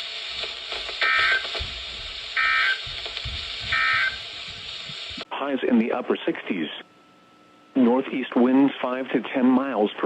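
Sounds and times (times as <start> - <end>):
radio reception hiss: 0.0 - 7.0, 7.7 - 10.0
data tone bursts: 1.0 - 1.5, 2.4 - 2.9, 3.7 - 4.2.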